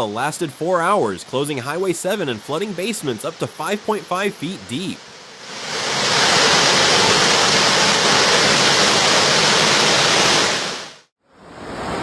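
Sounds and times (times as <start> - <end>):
loud rush of floodwater: 0.0 - 11.0.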